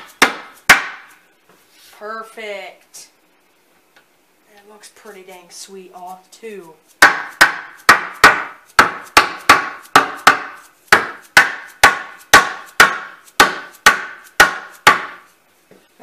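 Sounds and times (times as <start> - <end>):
hammer striking wood: 0.0 - 1.1, 7.0 - 15.2.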